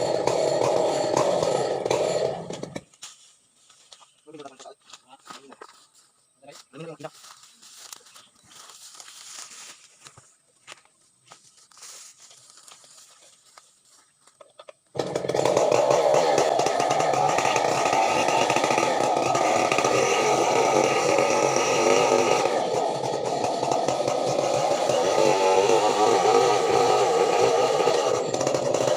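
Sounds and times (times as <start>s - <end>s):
chainsaw running: 0.0s - 2.9s, 14.9s - 28.9s.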